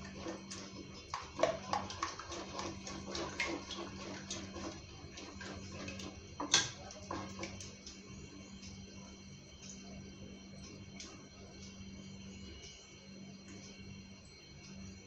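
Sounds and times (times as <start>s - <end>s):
utensil clicking and scraping in pot: 0.0s - 8.0s
steady low hum: 0.0s - 15.0s.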